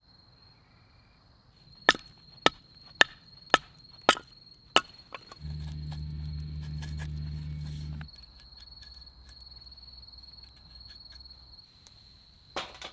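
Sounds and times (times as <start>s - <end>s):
high insect trill: 1.7s - 12.4s
knife chopping into wood: 1.9s - 8.1s
low steady hum: 4.8s - 8.1s.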